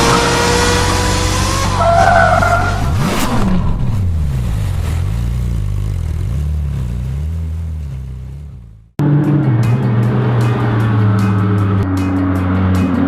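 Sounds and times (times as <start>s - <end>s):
high-pitched squeal: 0.0s - 3.4s
car engine revving: 0.0s - 13.0s.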